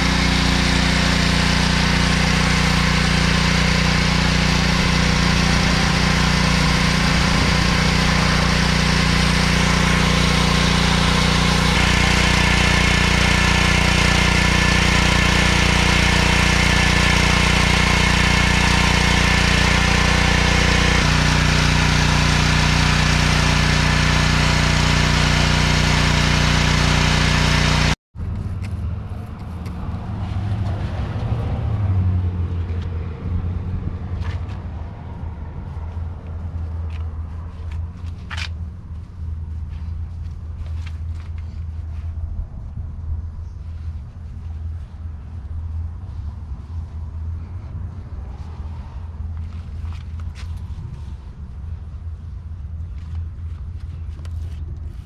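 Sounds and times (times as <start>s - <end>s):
pressure washer engine running: 0.0s - 28.0s
outdoor noise: 0.0s - 55.0s.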